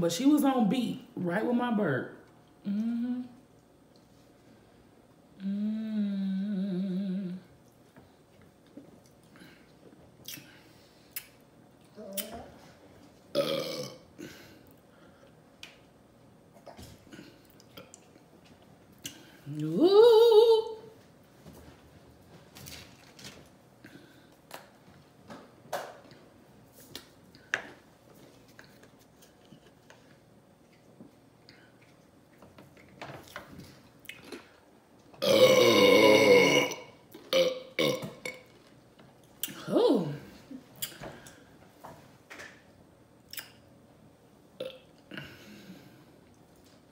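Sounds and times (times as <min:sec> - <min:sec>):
woman burping: 0:13.3 - 0:14.6, 0:35.2 - 0:38.5, 0:44.6 - 0:45.5.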